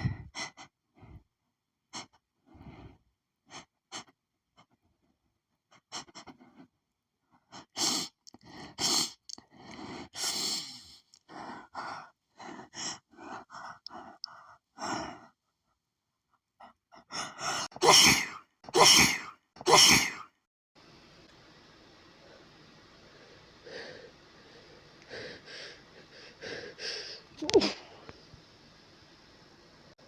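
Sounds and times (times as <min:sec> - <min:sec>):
woman sneezing: 0:17.8 - 0:20.3, 0:27.4 - 0:27.9.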